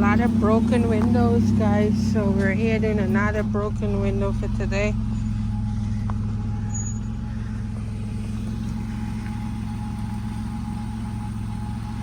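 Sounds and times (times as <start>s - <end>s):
vehicle engine running: 0.0s - 12.0s.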